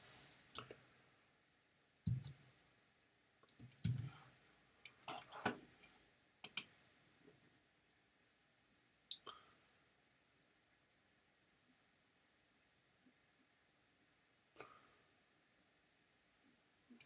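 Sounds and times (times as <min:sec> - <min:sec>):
computer mouse clicking: 0:02.1 - 0:02.4, 0:03.5 - 0:04.1.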